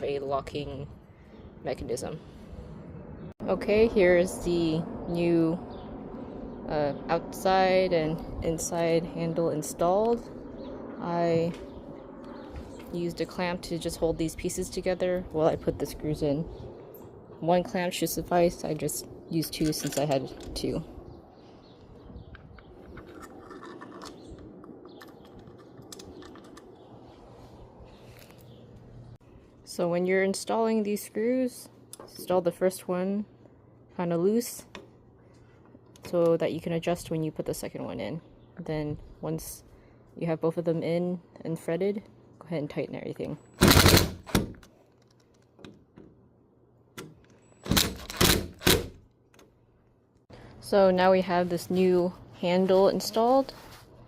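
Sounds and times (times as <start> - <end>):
hardware being handled: 19.4 - 20.7.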